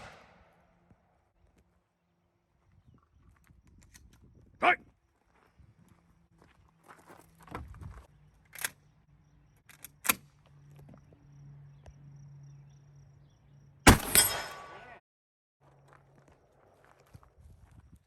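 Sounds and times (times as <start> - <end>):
shotgun shot: 0.0 - 0.6, 13.9 - 14.9.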